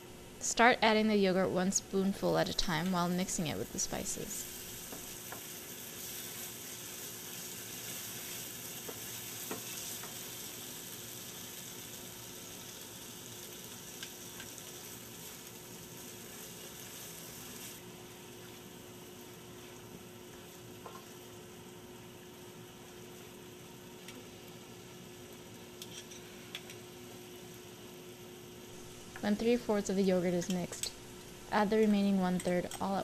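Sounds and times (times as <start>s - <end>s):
paste sizzling in hot oil: 3.0s - 23.6s.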